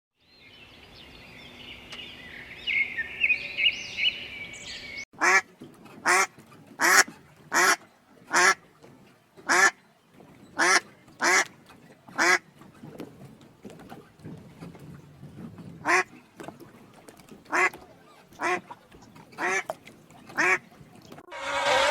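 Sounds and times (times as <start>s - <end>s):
duck quacking: 5.2s - 5.4s, 6.0s - 8.6s, 9.5s - 9.8s, 10.6s - 11.5s, 12.2s - 12.4s, 15.8s - 16.1s, 18.4s - 18.6s, 20.4s - 20.6s.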